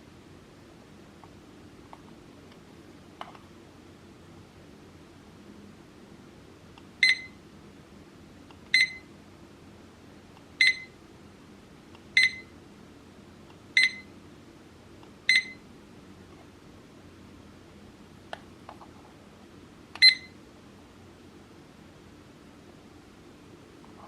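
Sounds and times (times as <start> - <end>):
short high beeps: 20.0 - 20.3.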